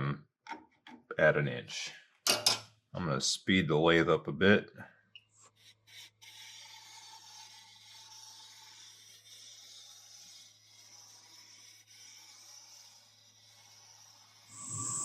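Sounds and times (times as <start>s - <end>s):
turning tool scraping wood: 5.5s - 15.0s
lathe humming: 14.5s - 15.0s.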